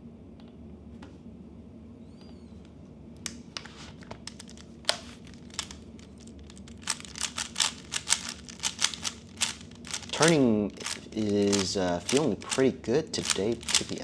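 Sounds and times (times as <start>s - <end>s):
puzzle cube layers clicking: 5.3s - 14.0s.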